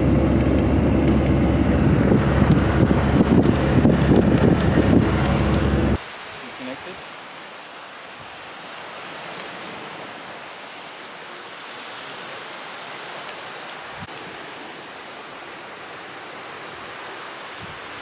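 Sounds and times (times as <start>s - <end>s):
steady rushing noise: 0.0s - 6.7s.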